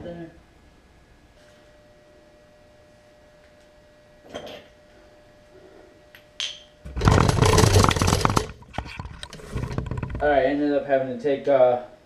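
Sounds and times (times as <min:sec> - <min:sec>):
power tool buzzing rattle: 0:06.8 - 0:10.4.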